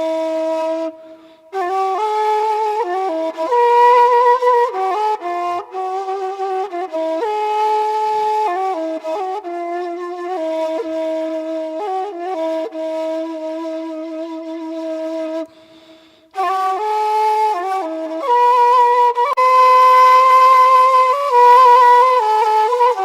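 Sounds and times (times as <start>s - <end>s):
solo woodwind playing slow notes: 8.5s - 23.0s.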